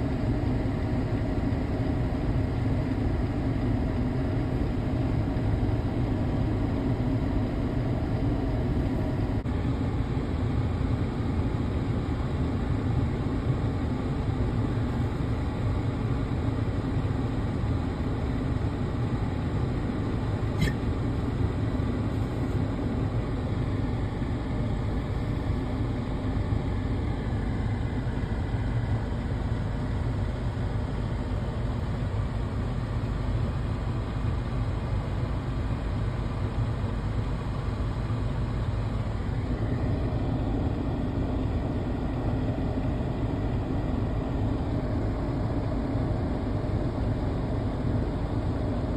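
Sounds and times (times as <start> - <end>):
vehicle engine rumble: 0.0 - 33.8.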